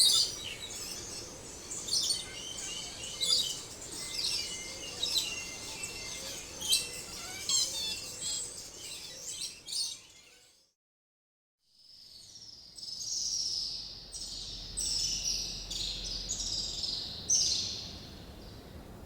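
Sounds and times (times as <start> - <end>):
faint steady forest hiss: 0.0 - 9.8, 12.6 - 19.0
birds chirping and singing: 0.0 - 10.5.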